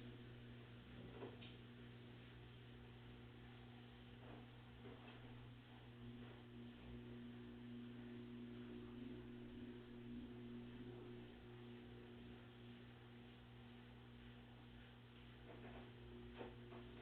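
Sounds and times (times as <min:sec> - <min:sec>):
washing machine humming: 0:00.0 - 0:17.0.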